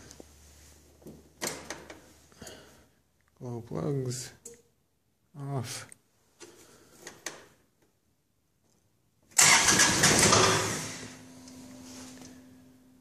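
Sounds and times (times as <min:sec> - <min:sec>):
diesel engine cranking and starting: 0:09.4 - 0:11.5.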